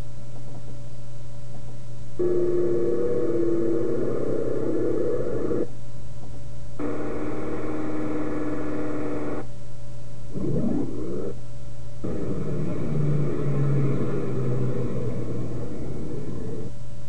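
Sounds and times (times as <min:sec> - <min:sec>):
constant low hum: 0:00.0 - 0:17.0
sustained buzzy electronic tones: 0:02.2 - 0:05.8, 0:06.8 - 0:09.5, 0:10.3 - 0:16.8
warbling electronic sweep: 0:10.3 - 0:11.4, 0:12.0 - 0:16.7.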